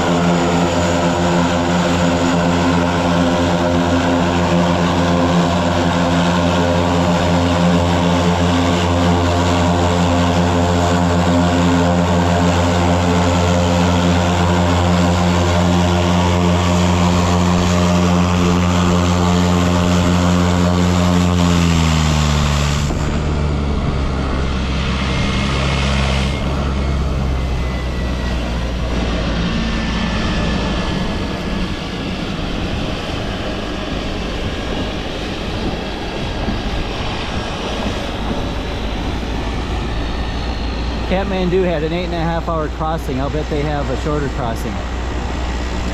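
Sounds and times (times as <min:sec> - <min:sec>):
propeller engine running: 0:00.0 - 0:45.9.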